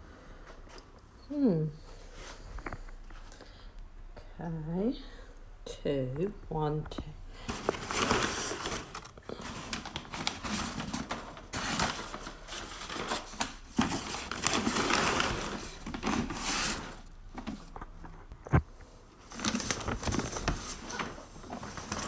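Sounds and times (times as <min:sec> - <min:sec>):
paper packaging rustling: 0:07.4 - 0:18.5, 0:19.2 - 0:22.0.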